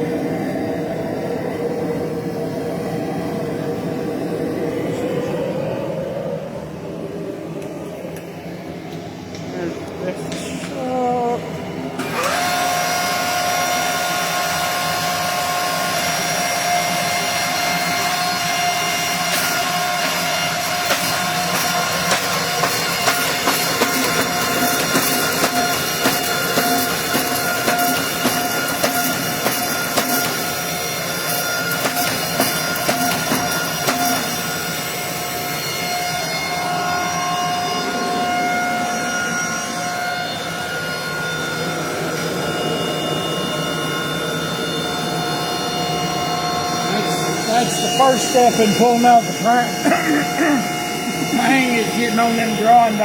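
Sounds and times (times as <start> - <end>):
forging equipment humming: 14.6 - 43.6, 44.5 - 53.0.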